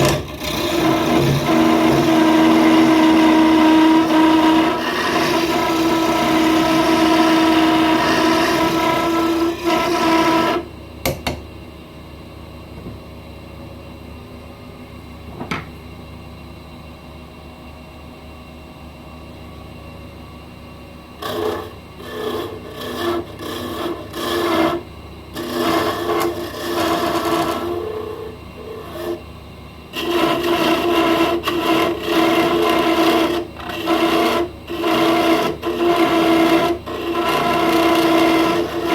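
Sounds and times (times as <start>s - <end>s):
tool rasping on spinning wood: 0.0s - 10.7s, 21.2s - 29.2s, 29.9s - 38.9s
wood lathe humming: 0.0s - 10.7s, 21.2s - 29.3s, 29.9s - 38.9s.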